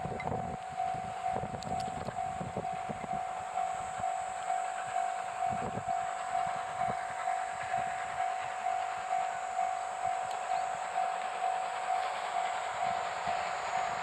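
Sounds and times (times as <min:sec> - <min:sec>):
steam locomotive hissing: 0:00.0 - 0:14.0.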